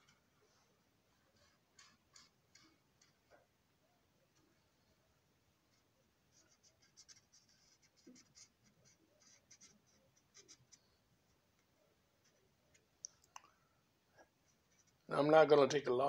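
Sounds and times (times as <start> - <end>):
marker scratching on plastic: 1.1 - 3.3, 5.7 - 11.0.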